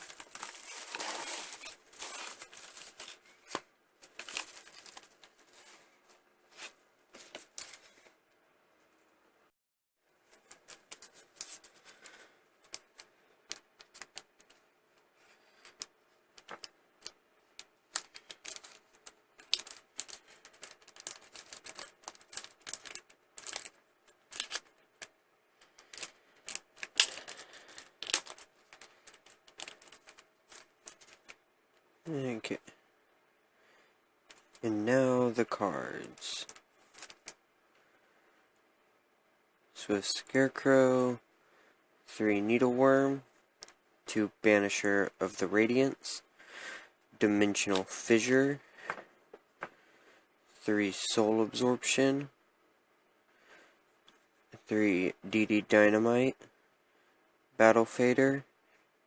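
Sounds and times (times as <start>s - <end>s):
packaging tearing and crinkling: 0.0s - 5.2s, 17.9s - 24.8s, 25.8s - 31.4s.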